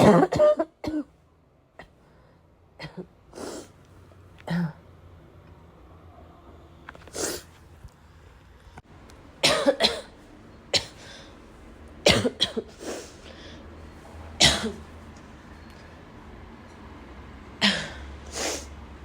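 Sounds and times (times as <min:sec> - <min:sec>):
person coughing: 0:00.0 - 0:01.1, 0:09.4 - 0:10.1, 0:12.0 - 0:12.8, 0:14.4 - 0:14.8.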